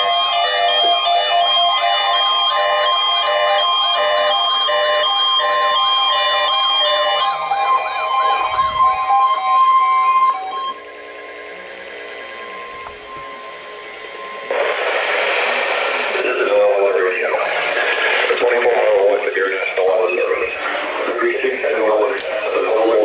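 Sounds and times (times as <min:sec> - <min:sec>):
two-note hi-lo alarm: 0:00.0 - 0:17.5
swooping yelp siren: 0:00.0 - 0:18.6, 0:20.4 - 0:23.0
steady alarm tone: 0:00.0 - 0:23.0.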